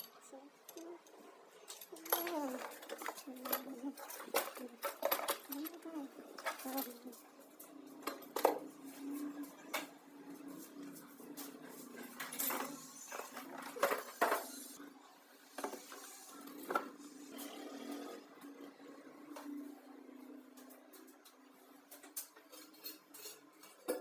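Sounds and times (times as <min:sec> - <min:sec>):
hard objects clinking: 0:00.0 - 0:09.9.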